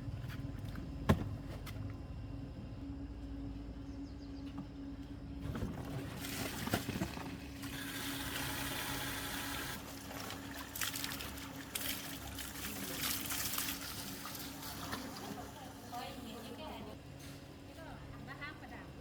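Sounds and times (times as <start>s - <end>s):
steady low hum: 0.0s - 7.8s
water trickling and splashing: 9.7s - 15.9s.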